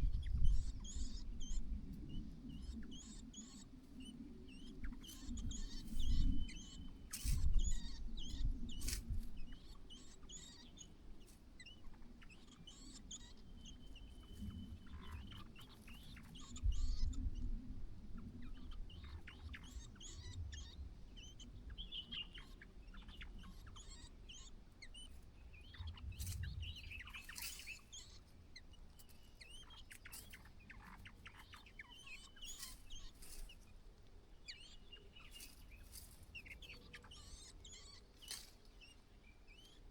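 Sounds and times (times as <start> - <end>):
birds chirping and whistling: 18.5 - 28.3, 29.0 - 33.6
rustling: 32.6 - 33.7, 35.3 - 36.4.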